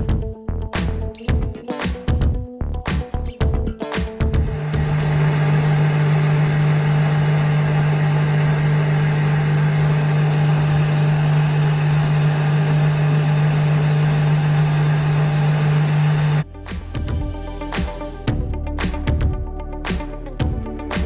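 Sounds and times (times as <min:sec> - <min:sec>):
motor humming with hiss: 0:04.4 - 0:16.4.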